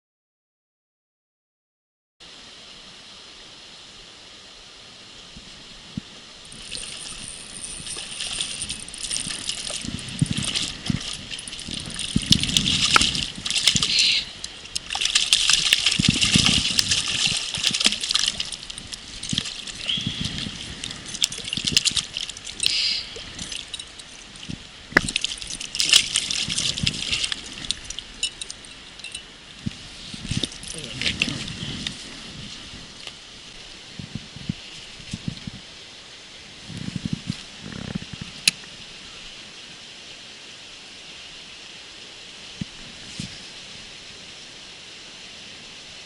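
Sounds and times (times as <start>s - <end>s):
water splashing and sloshing: 5.3s - 35.8s.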